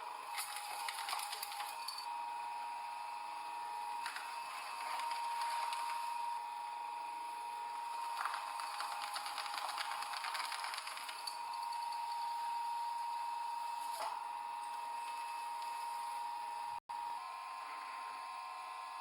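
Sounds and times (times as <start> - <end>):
crushing machine motor whine: 3.5 - 16.8.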